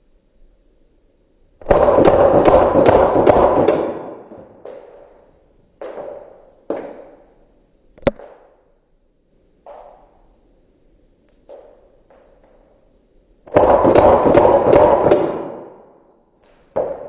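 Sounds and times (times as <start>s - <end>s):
airsoft pistol firing: 1.6s - 4.9s, 13.5s - 15.9s.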